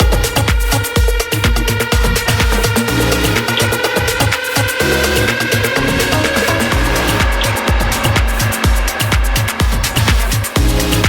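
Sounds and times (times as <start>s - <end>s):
bass synth chord: 0.0s - 11.0s
electronic dance music: 0.0s - 11.0s
hi-hats: 0.0s - 11.0s
kick drum beat: 0.0s - 11.0s.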